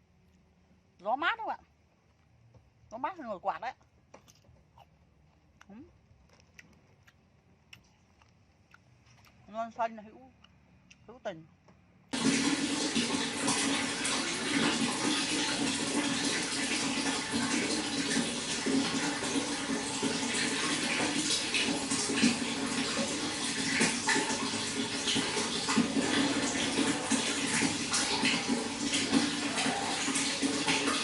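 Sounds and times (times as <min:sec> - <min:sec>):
water running and splashing: 0:12.2 - 0:31.0.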